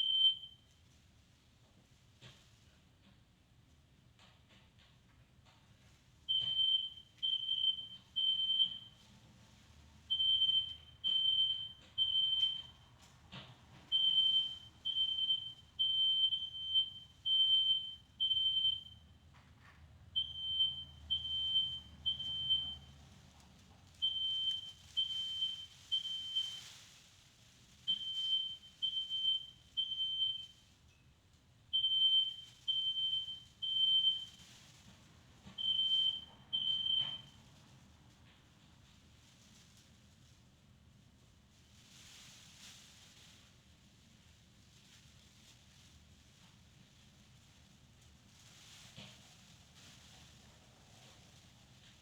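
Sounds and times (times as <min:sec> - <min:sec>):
smoke alarm beeping: 0:00.0 - 0:00.7, 0:06.3 - 0:12.9, 0:13.9 - 0:19.2, 0:20.2 - 0:23.1, 0:24.0 - 0:27.0, 0:27.9 - 0:31.0, 0:31.7 - 0:34.8, 0:35.5 - 0:37.4.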